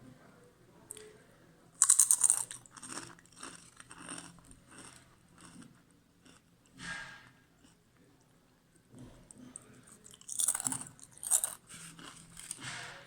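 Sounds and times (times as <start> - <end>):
chewing crunches: 1.8 - 6.5, 9.9 - 12.8
crunching bite of fried potatoes: 1.8 - 7.0, 10.0 - 13.0.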